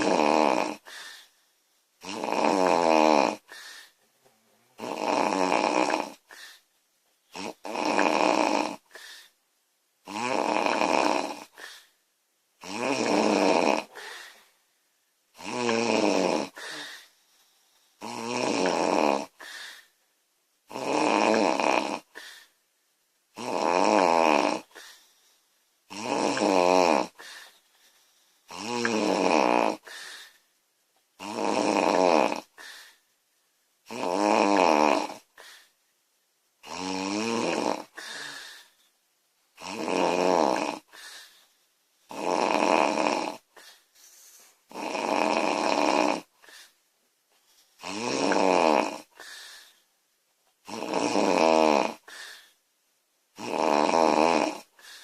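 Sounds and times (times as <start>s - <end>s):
woman snoring loudly: 0.0s - 1.1s, 2.0s - 3.6s, 4.8s - 6.4s, 7.3s - 9.0s, 10.0s - 11.7s, 12.6s - 14.4s, 15.4s - 17.1s, 18.0s - 19.5s, 20.7s - 22.5s, 23.4s - 24.9s, 25.9s - 27.4s, 28.5s - 30.1s, 31.2s - 32.7s, 33.9s - 35.3s, 36.6s - 38.6s, 39.6s - 41.0s, 42.1s - 43.5s, 44.7s - 46.4s, 47.8s - 49.3s, 50.6s - 52.2s, 53.4s - 55.0s.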